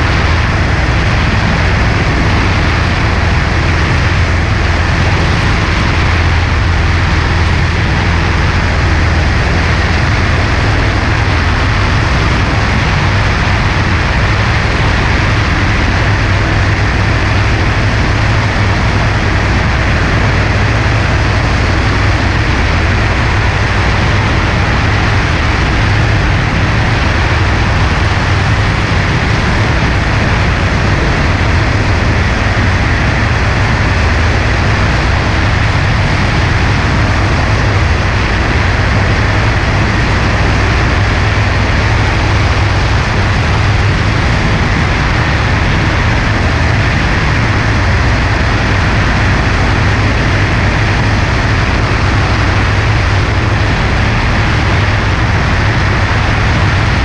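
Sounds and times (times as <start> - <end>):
propeller plane engine drone: 0.0 - 57.0
wind rushing: 0.0 - 57.0.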